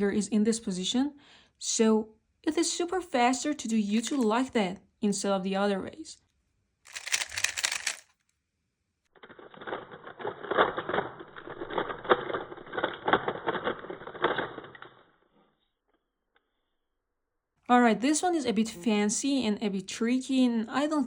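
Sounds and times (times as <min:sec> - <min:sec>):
puzzle cube plastic clicking: 0:06.9 - 0:08.1.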